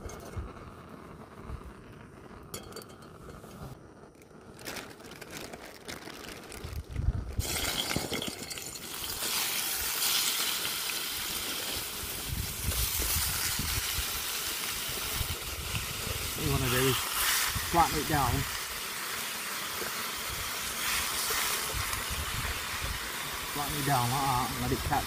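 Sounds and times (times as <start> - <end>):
meat sizzling in a pan: 7.4 - 25.0.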